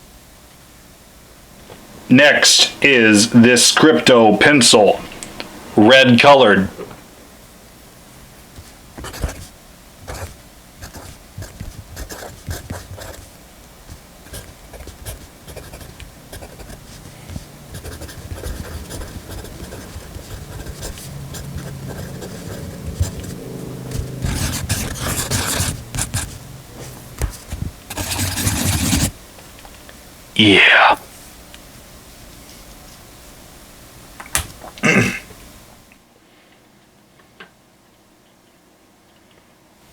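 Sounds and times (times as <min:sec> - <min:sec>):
pencil scratching on paper: 0:08.6 - 0:26.4, 0:27.9 - 0:29.1.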